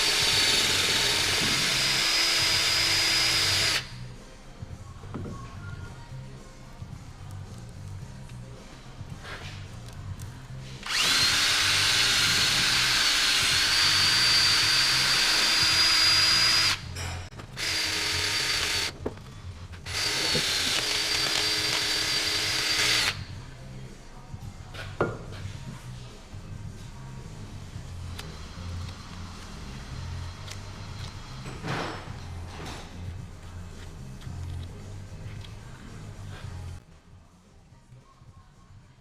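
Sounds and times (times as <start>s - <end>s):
power drill running: 0.0s - 3.9s, 10.8s - 16.9s, 17.6s - 18.9s, 19.9s - 23.2s.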